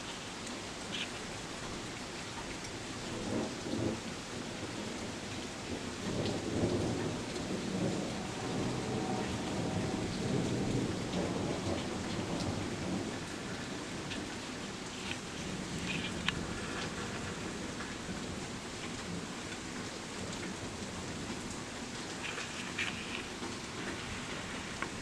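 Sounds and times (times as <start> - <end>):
steady rain: 0.0 - 25.0
rolling thunder: 3.2 - 19.4.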